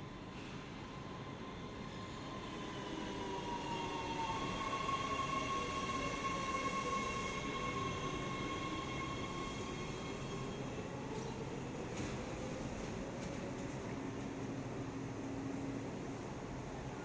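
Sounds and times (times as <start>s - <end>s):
subway train high whine: 0.0s - 17.0s.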